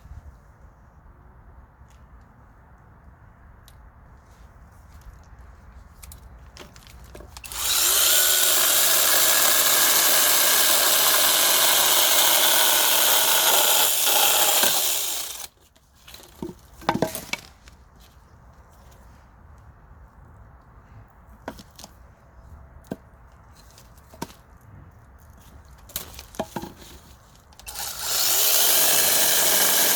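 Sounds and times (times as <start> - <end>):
mini chainsaw sawing wood: 7.4 - 15.6, 27.6 - 29.9.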